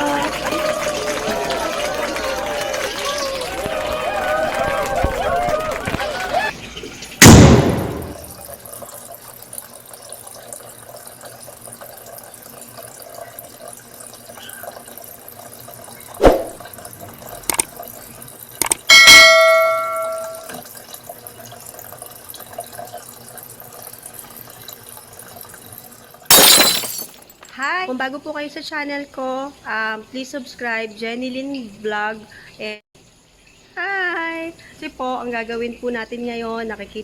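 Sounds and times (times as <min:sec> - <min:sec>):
water running into washing machine: 0:05.9 - 0:07.2, 0:08.4 - 0:18.8, 0:19.6 - 0:26.3
sharp clicks: 0:18.6 - 0:18.9
electronic chime: 0:18.9 - 0:20.5.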